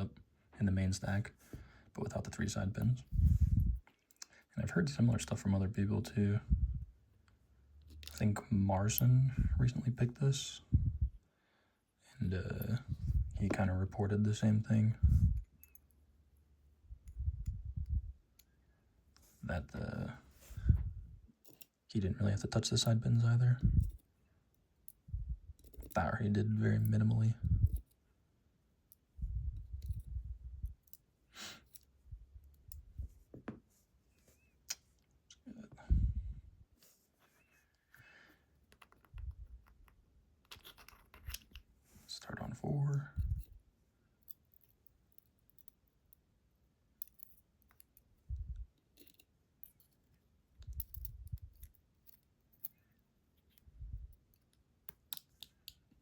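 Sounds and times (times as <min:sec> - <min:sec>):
light clicks of lock parts: 0:07.2 - 0:09.1, 0:15.4 - 0:16.0, 0:21.4 - 0:21.8, 0:23.8 - 0:25.0, 0:25.6 - 0:26.0, 0:26.7 - 0:28.0, 0:28.8 - 0:32.9, 0:38.6 - 0:41.7, 0:44.2 - 0:46.3, 0:47.0 - 0:56.0.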